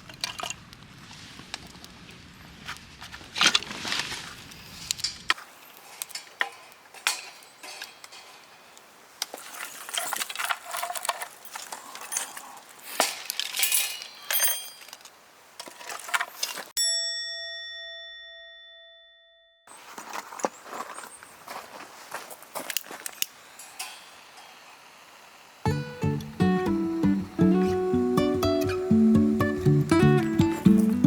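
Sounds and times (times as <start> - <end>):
camp gear clicking and rustling: 2.7 - 16.8, 19.7 - 24.1
bell-like metallic ding: 16.8 - 19.7.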